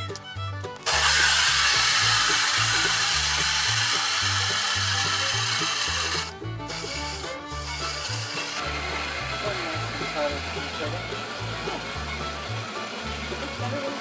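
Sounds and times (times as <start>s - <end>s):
background music: 0.0s - 14.0s
hose spraying water: 0.8s - 12.0s.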